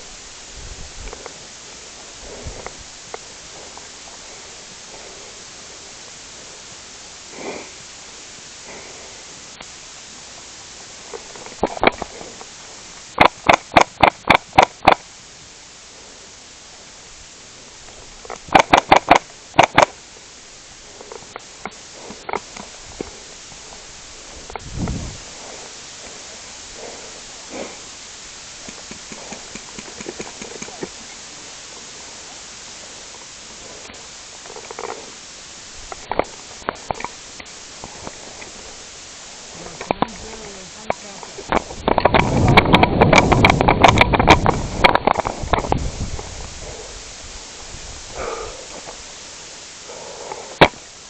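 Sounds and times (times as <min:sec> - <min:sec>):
steady hiss: 0:00.0 - 0:51.0
sharp clicks: 0:11.1 - 0:12.5, 0:13.2 - 0:15.1, 0:17.9 - 0:20.0, 0:21.0 - 0:23.2, 0:28.6 - 0:31.0, 0:39.6 - 0:45.8, 0:50.3 - 0:50.9
airsoft rifle shots: 0:13.2 - 0:15.0, 0:18.5 - 0:20.0.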